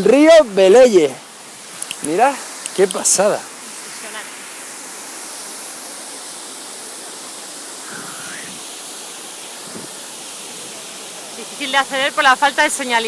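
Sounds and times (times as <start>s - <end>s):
waterfall rushing and splashing: 0.0s - 13.0s.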